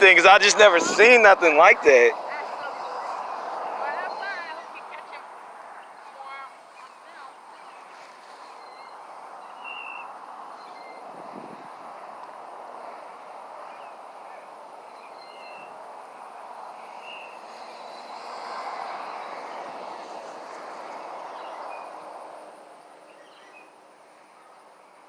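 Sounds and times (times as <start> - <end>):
road traffic noise: 0.0 - 25.0
bird chirps: 6.7 - 11.1.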